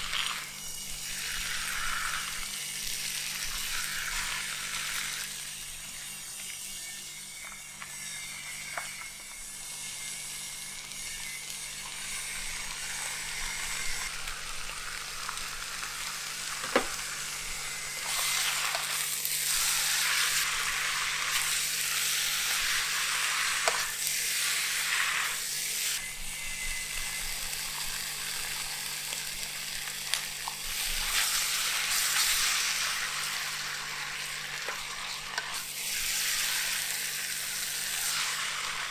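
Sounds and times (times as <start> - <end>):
food sizzling in a pan: 0.0 - 38.9
utensil tapping a pan: 16.6 - 17.0.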